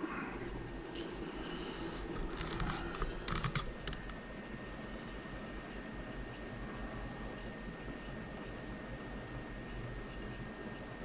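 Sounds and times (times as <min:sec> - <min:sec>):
low background hum: 0:00.0 - 0:11.0
keyboard and mouse clicks: 0:02.2 - 0:04.2.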